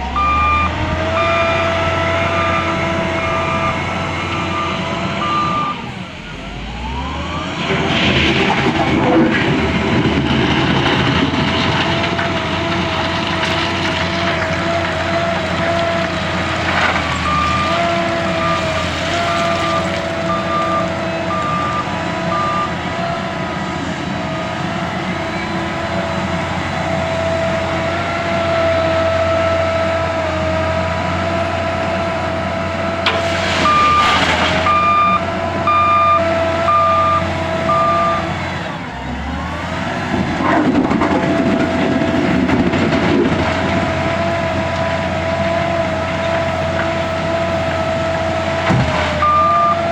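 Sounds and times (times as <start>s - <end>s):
reversing alarm beeps: 0.0s - 7.2s, 17.0s - 22.8s, 33.5s - 38.4s, 49.2s - 49.9s
diesel loader engine under load: 0.0s - 49.9s.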